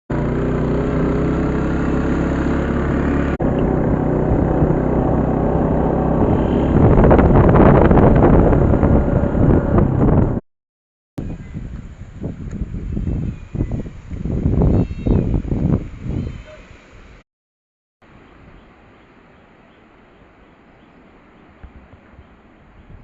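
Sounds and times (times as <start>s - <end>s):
steady low drone: 0.6s - 10.0s
strong wind buffeting microphone: 3.5s - 10.4s, 11.2s - 16.6s.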